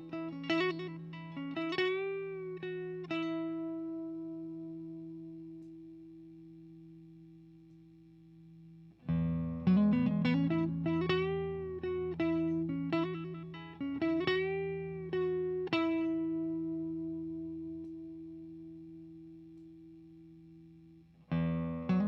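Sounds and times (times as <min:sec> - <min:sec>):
electric guitar chord and lick: 0:09.1 - 0:19.6.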